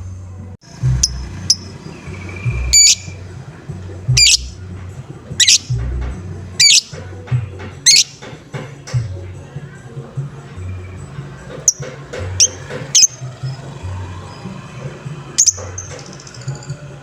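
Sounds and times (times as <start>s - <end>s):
music with low bass beat: 0.7s - 8.2s
short bird chirps: 1.0s - 3.2s, 4.2s - 4.5s, 5.4s - 5.8s, 6.6s - 6.9s, 7.9s - 8.2s
lovebird squawking: 1.0s - 3.3s, 4.1s - 4.6s, 5.4s - 6.0s, 6.6s - 7.0s, 7.8s - 8.3s, 11.7s - 13.2s, 15.4s - 16.4s.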